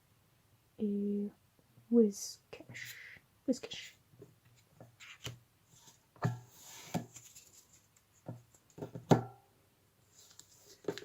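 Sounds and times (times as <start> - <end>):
cardboard sliding scrape: 5.8 - 7.6
taps and knocks on tabletop: 8.2 - 9.4.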